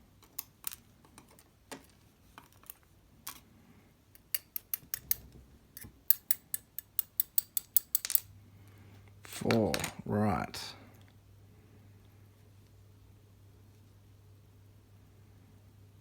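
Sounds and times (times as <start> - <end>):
metal lock parts clicking: 4.2 - 8.3.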